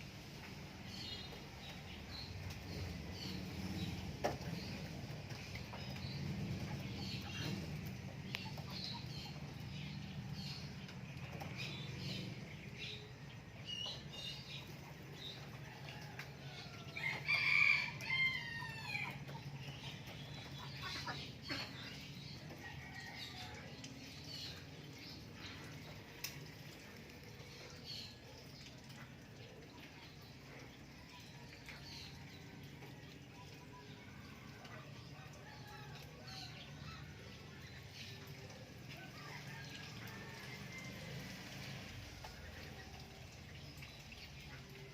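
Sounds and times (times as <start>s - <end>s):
rooster crowing: 39.3s - 41.3s.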